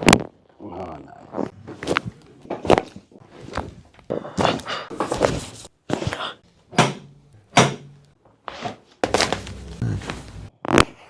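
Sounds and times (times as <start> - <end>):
rustling: 9.0 - 10.5.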